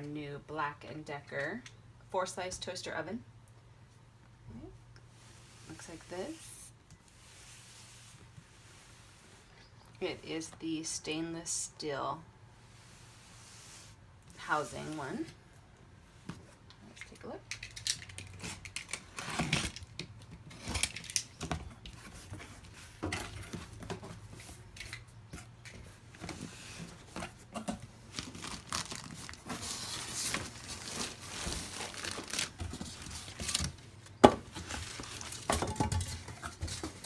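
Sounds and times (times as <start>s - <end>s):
cardboard tearing: 18.4s - 19.8s, 28.0s - 33.8s
packaging crinkling: 28.0s - 35.5s.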